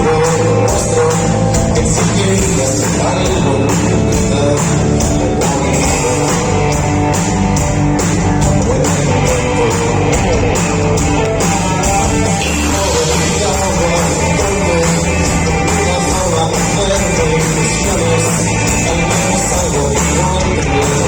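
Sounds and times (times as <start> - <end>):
person singing: 0.0 - 7.0, 11.7 - 21.0
live rock band: 0.0 - 21.0.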